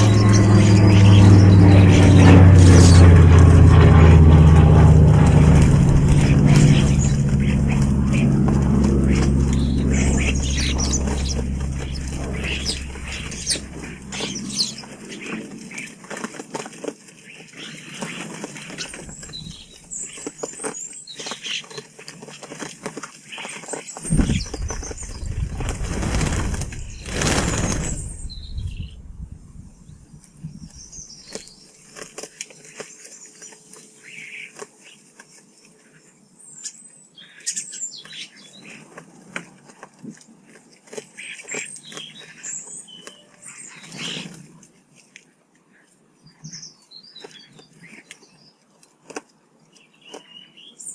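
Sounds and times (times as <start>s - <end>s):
low steady hum: 0.0s - 15.8s, 24.0s - 31.0s
birds chirping: 0.0s - 16.4s, 17.2s - 22.5s, 23.2s - 35.3s
wing flutters: 0.0s - 29.8s.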